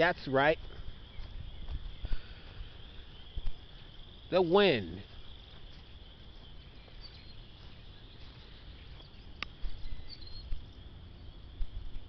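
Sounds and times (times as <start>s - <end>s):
crickets chirping: 0.0s - 12.0s
wind rumbling on microphone: 0.6s - 4.3s, 5.0s - 12.0s.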